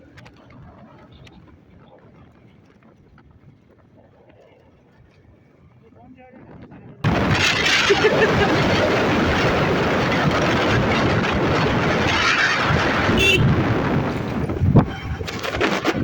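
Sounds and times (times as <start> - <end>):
road and engine noise: 0.0 - 16.0
wind buffeting microphone: 5.0 - 16.0.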